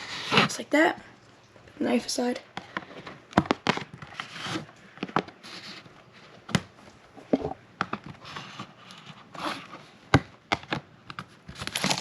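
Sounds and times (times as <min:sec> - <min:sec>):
shrink wrap crinkling: 0:11.2 - 0:12.0.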